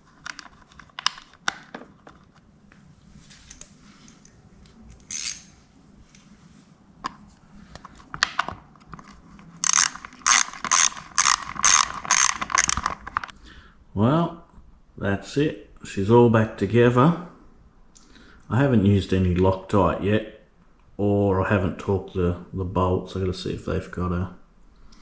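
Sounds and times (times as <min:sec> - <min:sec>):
metal parts clicking: 0:05.0 - 0:05.5, 0:08.2 - 0:13.3
ratchet spanner clicking: 0:05.1 - 0:05.4, 0:09.6 - 0:13.0.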